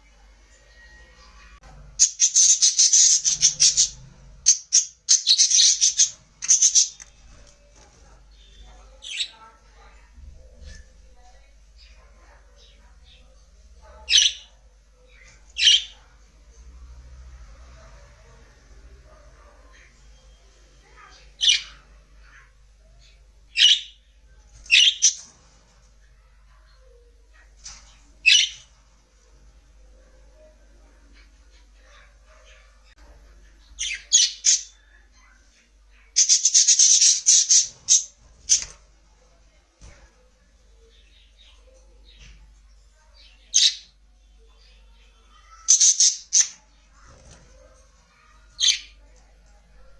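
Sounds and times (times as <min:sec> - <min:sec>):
budgerigar chattering calls: 0:36.2 - 0:38.1.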